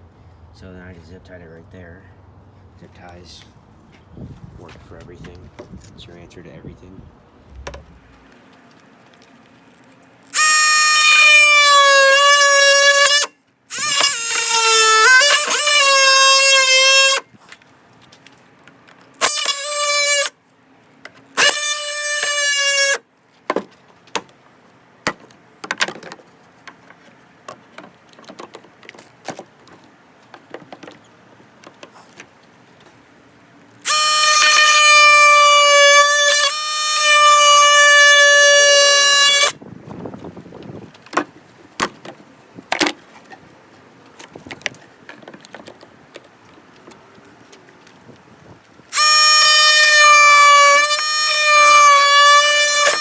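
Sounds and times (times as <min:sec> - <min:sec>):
power drill whining: 0:10.4 - 0:17.2, 0:19.2 - 0:20.3, 0:21.4 - 0:23.0, 0:33.9 - 0:39.6, 0:48.9 - 0:53.0.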